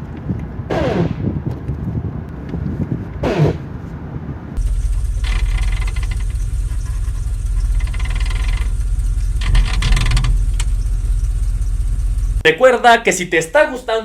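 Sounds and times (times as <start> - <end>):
engine running: 4.5 - 12.4
gears grinding: 4.6 - 12.4.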